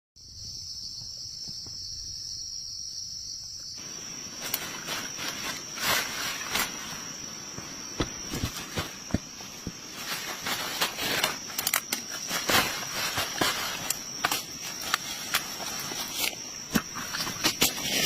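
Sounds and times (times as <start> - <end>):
insects droning: 0.2 - 18.0
rustling crackling noise: 3.8 - 18.0.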